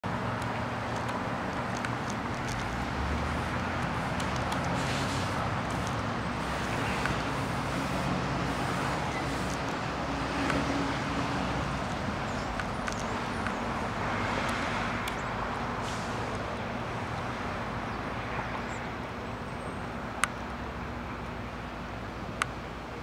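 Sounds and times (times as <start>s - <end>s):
road traffic rumble: 0.0s - 23.0s.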